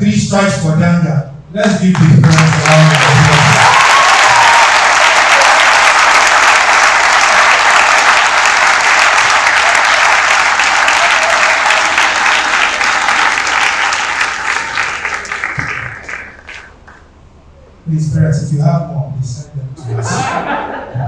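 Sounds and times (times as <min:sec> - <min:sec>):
audience applauding: 0:01.9 - 0:17.1.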